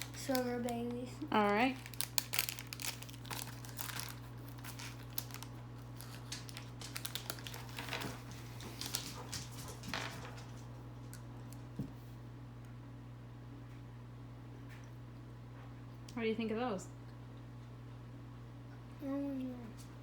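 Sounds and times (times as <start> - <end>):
candy packet crinkling: 0.0 - 9.3
steady low hum: 0.0 - 20.0.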